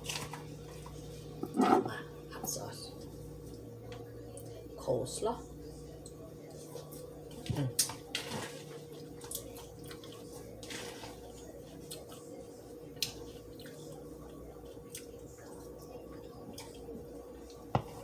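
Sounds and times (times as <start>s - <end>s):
faint steady hum: 0.0s - 18.0s
mouth chewing food: 9.2s - 12.3s, 13.0s - 17.6s.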